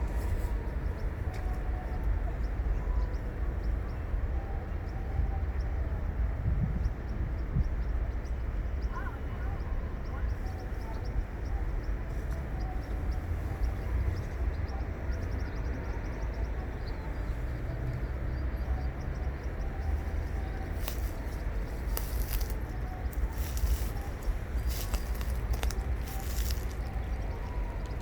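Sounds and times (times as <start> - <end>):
bird chirps: 10.1 - 28.0.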